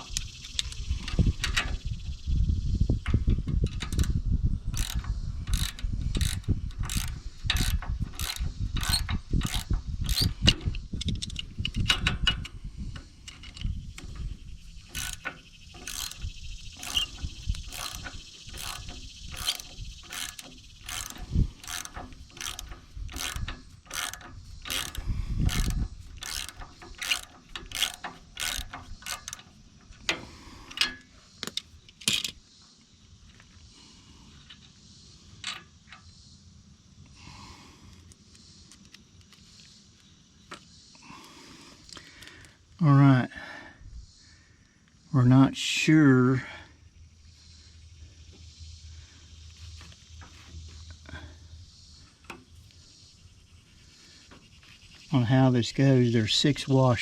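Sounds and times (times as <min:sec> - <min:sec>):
ratchet wrench clicking: 0:03.0 - 0:32.4.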